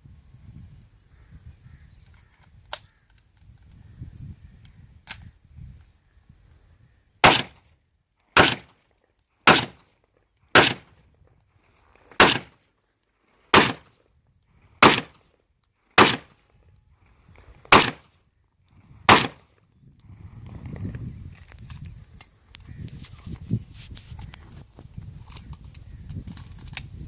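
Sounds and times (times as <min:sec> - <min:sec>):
pistol shots with echo: 0:07.2 - 0:07.6, 0:08.4 - 0:08.7, 0:09.5 - 0:09.8, 0:10.6 - 0:10.9, 0:12.2 - 0:12.5, 0:13.6 - 0:13.8, 0:14.8 - 0:15.2, 0:16.0 - 0:16.3, 0:17.7 - 0:18.0, 0:19.1 - 0:19.4.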